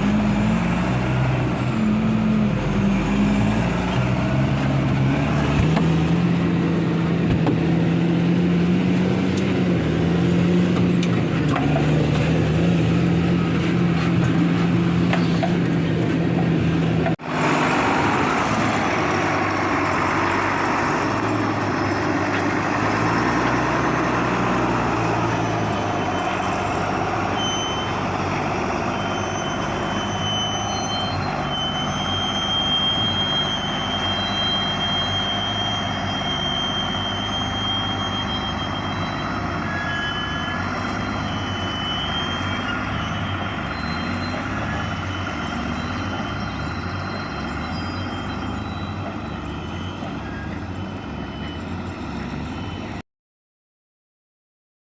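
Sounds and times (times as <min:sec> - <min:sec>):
tractor engine running: 0:00.0 - 0:32.4.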